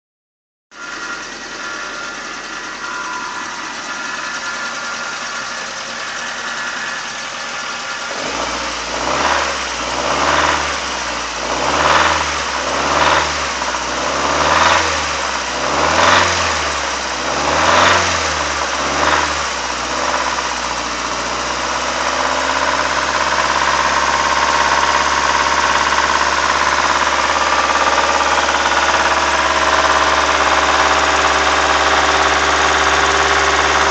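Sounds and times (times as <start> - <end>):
car engine idling and revving: 0.7 - 33.9
engine rattle: 0.8 - 33.9.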